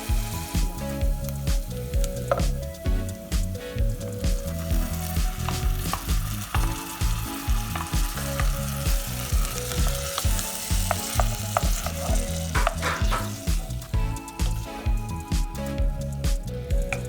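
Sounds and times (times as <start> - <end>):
food sizzling in oil: 0.0 - 0.8, 4.1 - 13.9
background music with beat: 0.0 - 17.0.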